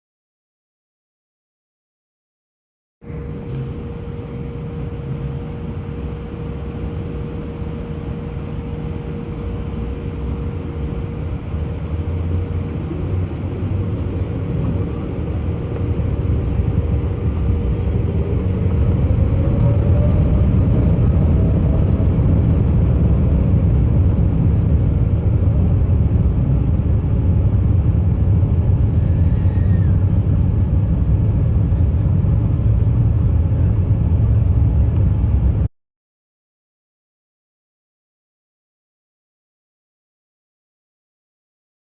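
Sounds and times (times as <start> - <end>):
airliner engine rumble: 3.0 - 35.7
faint rising whine: 3.0 - 35.7.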